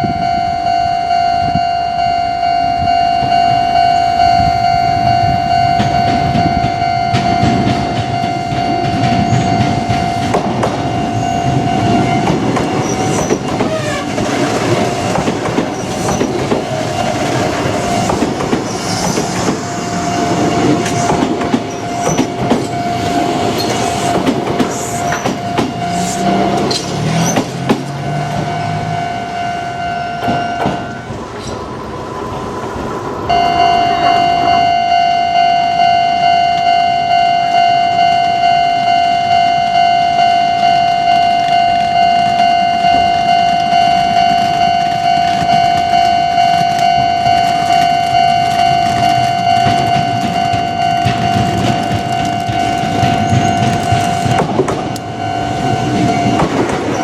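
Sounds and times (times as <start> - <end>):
electric train rumbling: 0.0 - 57.0
level crossing warning bell: 0.0 - 57.0
train wheels clattering on rail joints: 5.7 - 28.8, 30.2 - 33.3, 42.9 - 57.0.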